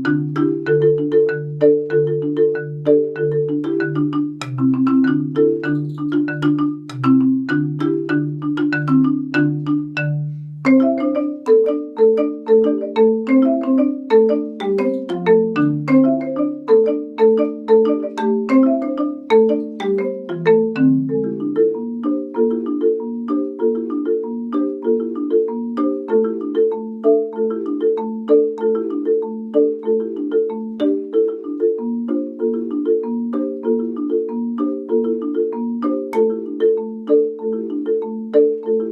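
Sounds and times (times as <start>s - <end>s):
low marimba bass notes: 0.0s - 38.9s
marimba notes: 0.0s - 38.9s.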